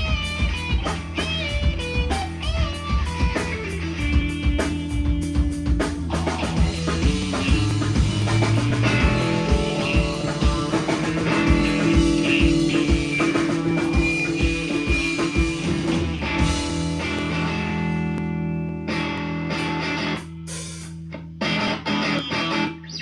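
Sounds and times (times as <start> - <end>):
steady drum beat: 0.0 - 18.3
electric guitars: 0.0 - 23.0
held high guitar note: 6.3 - 20.2.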